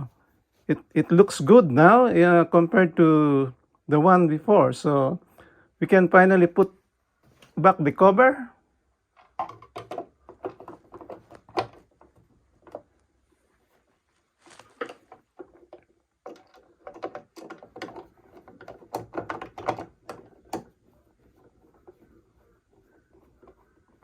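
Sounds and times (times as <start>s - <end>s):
clicks and knocks of parts handled: 9.1s - 13.1s, 14.4s - 20.8s.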